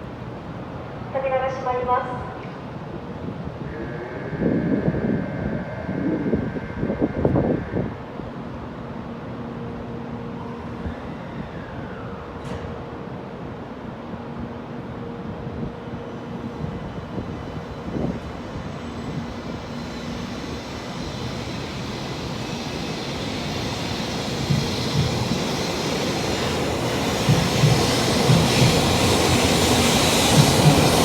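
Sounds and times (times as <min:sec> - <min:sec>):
train rushing noise: 0:00.0 - 0:31.0
low train wheel thumps: 0:24.4 - 0:25.7, 0:26.4 - 0:31.0.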